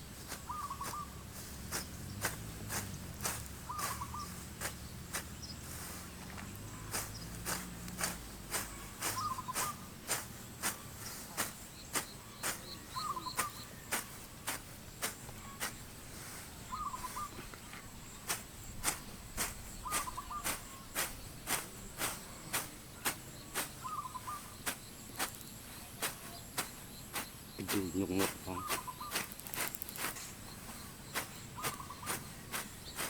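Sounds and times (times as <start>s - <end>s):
insect drone: 18.2s - 33.0s
sharp regular clicks: 29.1s - 30.1s.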